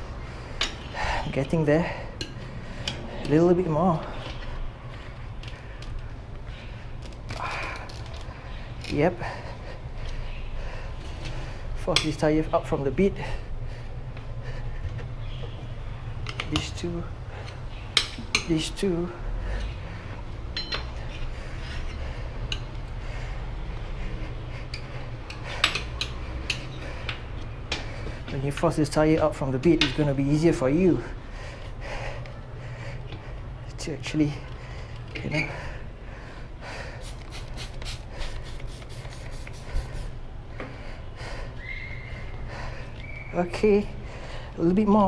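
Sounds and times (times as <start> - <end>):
tyre levers clinking on rim: 20.6 - 22.0.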